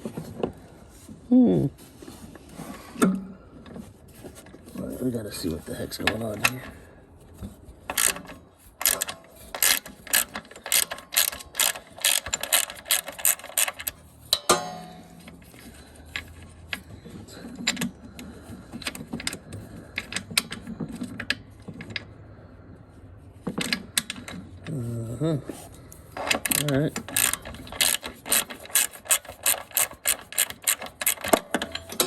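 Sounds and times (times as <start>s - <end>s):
ratchet wrench clicking: 7.9s - 14.6s, 26.2s - 32.0s.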